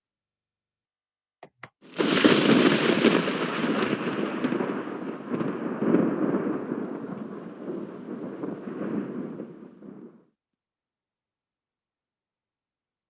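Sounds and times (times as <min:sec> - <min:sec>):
thunderclap with rolling rumble: 0:01.9 - 0:10.2.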